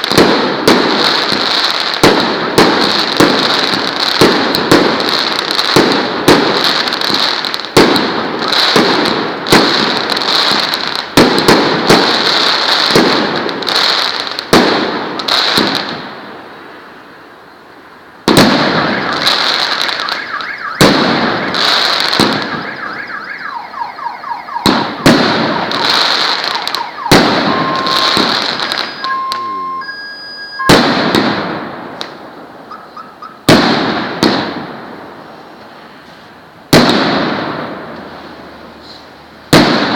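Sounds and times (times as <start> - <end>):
fireworks bangs and crackling: 0.0 - 17.1, 17.7 - 39.9
short beeping tones: 25.7 - 30.8.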